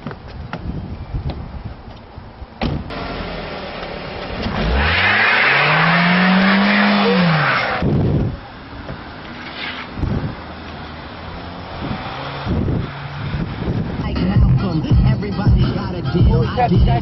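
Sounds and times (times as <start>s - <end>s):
thump: 2.6s - 2.9s
rushing noise of car speeding: 2.9s - 8.4s, 9.3s - 14.2s
car engine revving: 2.9s - 17.0s.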